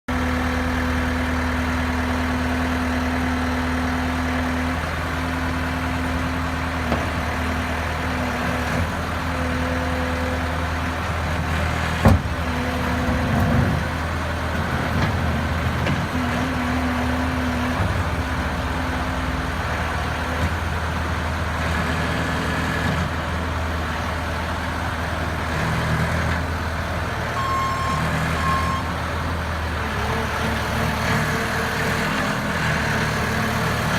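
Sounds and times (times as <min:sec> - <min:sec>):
diesel engine running: 0:00.1 - 0:33.9
brief beep: 0:27.4 - 0:28.9.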